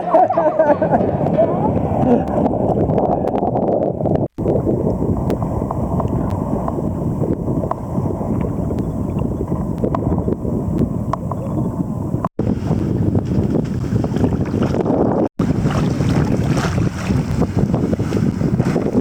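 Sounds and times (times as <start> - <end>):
wind buffeting microphone: 0.0 - 19.0
water rushing: 15.4 - 19.0.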